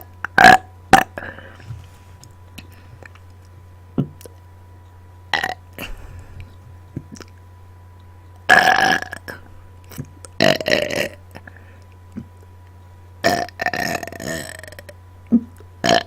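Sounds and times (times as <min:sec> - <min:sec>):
person burping: 0:08.5 - 0:09.4, 0:10.4 - 0:11.2, 0:13.2 - 0:16.0.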